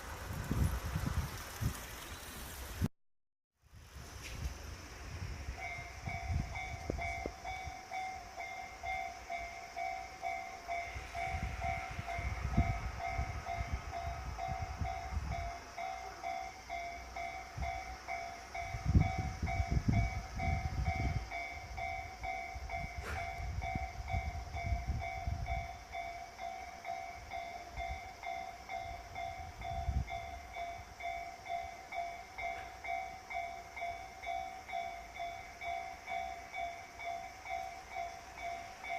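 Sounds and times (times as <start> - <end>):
electric train rumbling past: 0.0 - 2.9, 3.8 - 38.9.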